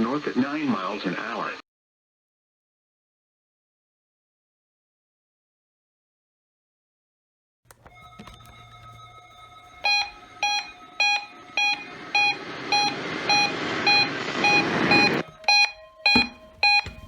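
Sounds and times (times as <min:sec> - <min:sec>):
radio static hiss: 0:00.0 - 0:01.6, 0:11.6 - 0:15.2
weather radio alert beeping: 0:07.9 - 0:17.0.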